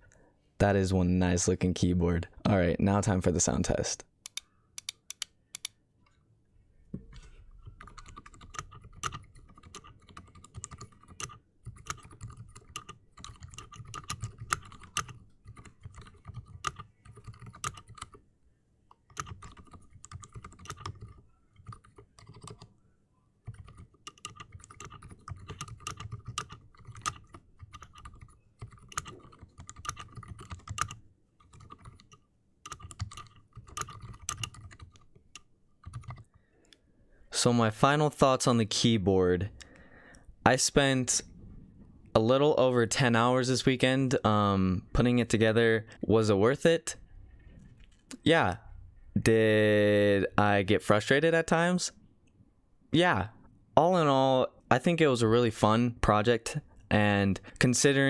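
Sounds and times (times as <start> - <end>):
muted mechanical keyboard typing: 7.6 - 18.2, 18.9 - 22.7, 23.4 - 36.3.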